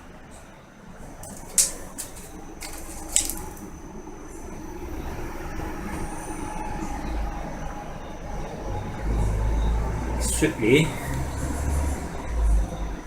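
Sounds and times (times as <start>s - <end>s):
wheels rolling rumble on floor: 1.2s - 3.7s.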